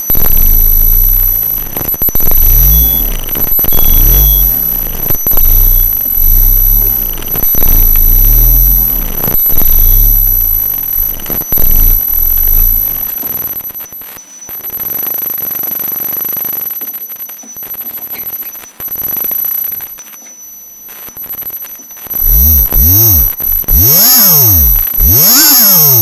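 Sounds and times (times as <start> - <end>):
tones sweeping up and down: 0.0 - 13.2, 22.0 - 26.0
high-pitched electronic whine: 0.0 - 26.0.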